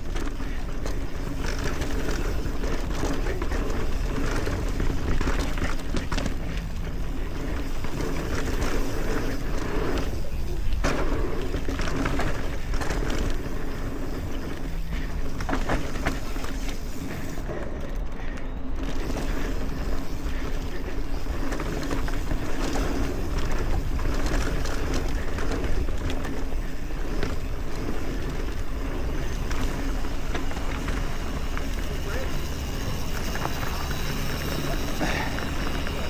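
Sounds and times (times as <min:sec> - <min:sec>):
bike clattering over bumps: 0:00.0 - 0:36.0
wind and tyre noise: 0:00.0 - 0:36.0.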